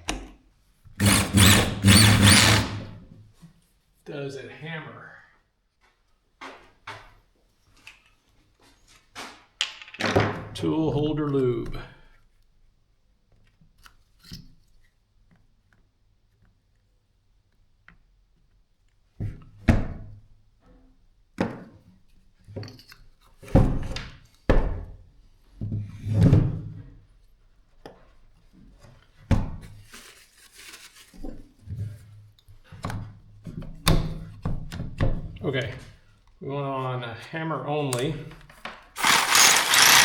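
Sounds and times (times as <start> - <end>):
hard parts knocking on workbench: 9.6 - 10.6, 39.0 - 40.0.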